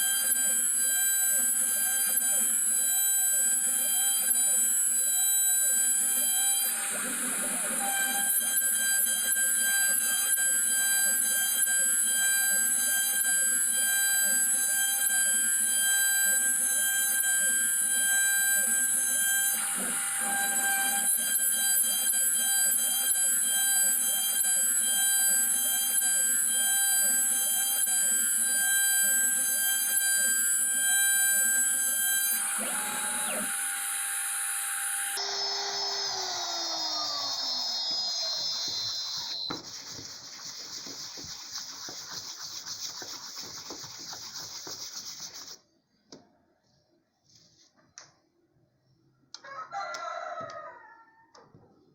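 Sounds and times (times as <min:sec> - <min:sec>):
router spindle whine spinning down: 0:00.0 - 0:40.8
spindle high whine: 0:20.2 - 0:40.6
stepper motors rising and falling: 0:31.0 - 0:39.9
rough cutting noise: 0:35.2 - 0:45.6
crackling and rubbing: 0:39.4 - 0:45.6.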